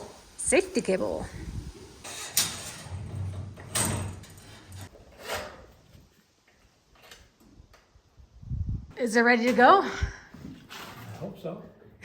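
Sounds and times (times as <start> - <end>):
metal knocks and rattles: 2.0 - 4.9.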